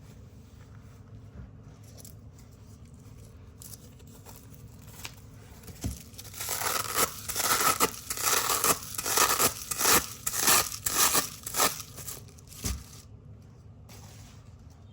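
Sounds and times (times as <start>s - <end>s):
velcro strips ripping: 6.0s - 13.0s.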